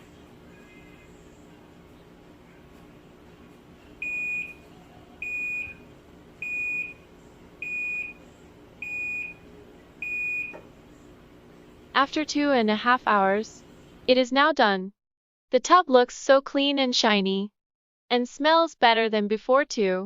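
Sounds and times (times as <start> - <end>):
washing machine high beeps: 4.0 - 10.6.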